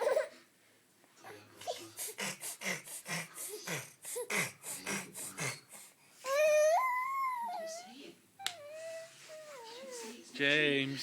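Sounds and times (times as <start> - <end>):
person snorting playfully: 1.7 - 5.9.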